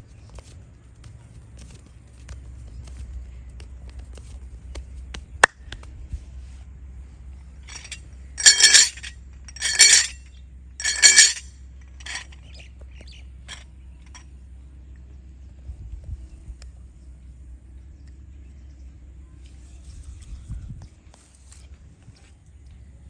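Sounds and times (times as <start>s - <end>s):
rapid clinking clicks: 7.7s - 10.2s, 10.8s - 11.4s, 12.0s - 12.4s.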